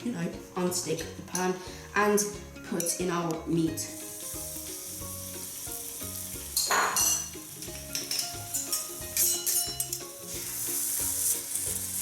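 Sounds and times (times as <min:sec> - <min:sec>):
background music with bass line: 0:03.4 - 0:12.0
meat sizzling in a pan: 0:03.8 - 0:12.0.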